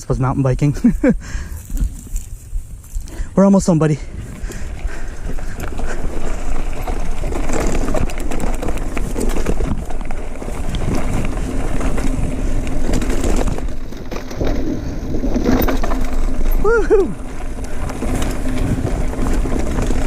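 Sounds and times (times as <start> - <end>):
bike rattling: 0.0 - 20.0
wind on microphone: 0.9 - 13.8
tyres crunching on dirt: 4.2 - 20.0.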